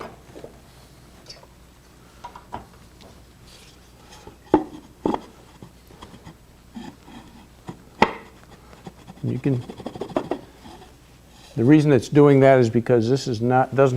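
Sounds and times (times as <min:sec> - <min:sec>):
light wooden scraping: 0:03.4 - 0:11.9
wooden pieces knocking: 0:04.5 - 0:10.9.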